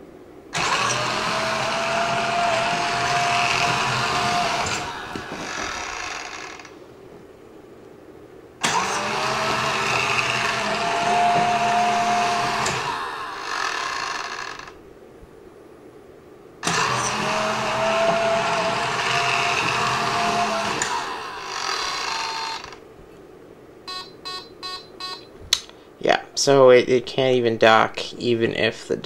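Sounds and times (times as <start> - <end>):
robot vacuum motors whining: 0.6 - 6.8, 8.6 - 14.8, 16.6 - 22.8.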